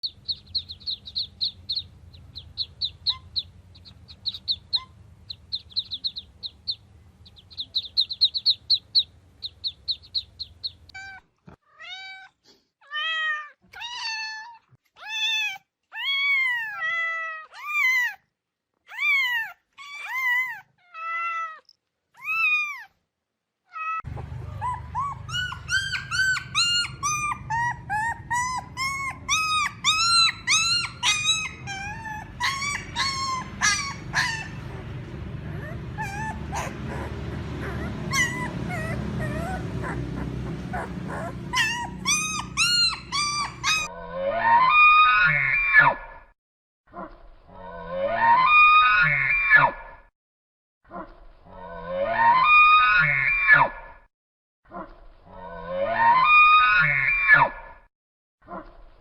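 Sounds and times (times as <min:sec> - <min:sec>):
fast high chirping: 0:00.0 - 0:10.9, 0:24.5 - 0:34.8, 0:35.5 - 0:43.9
cat meowing: 0:10.9 - 0:18.2
low rumble: 0:24.1 - 0:43.9.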